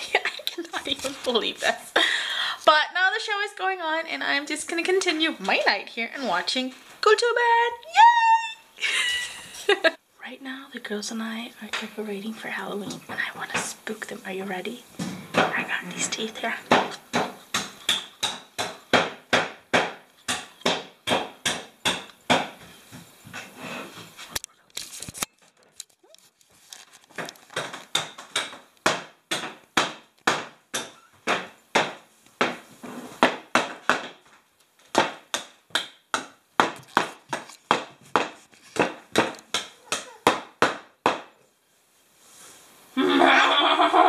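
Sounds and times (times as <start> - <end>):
sharp hammer-like knocks: 16.7 - 22.6, 27.5 - 32.6.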